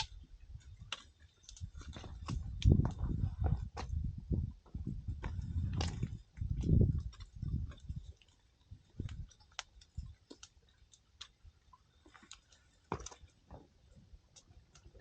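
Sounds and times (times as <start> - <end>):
firewood crackling and popping: 0.0 - 15.0
dull low thuds: 1.8 - 8.1.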